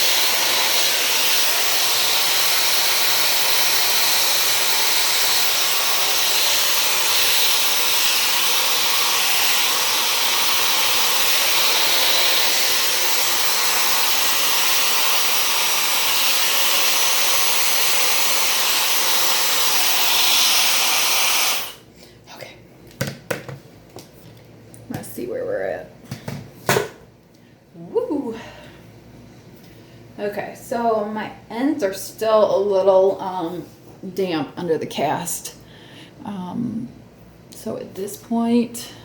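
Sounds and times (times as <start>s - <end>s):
hair dryer blowing: 0.0s - 21.8s.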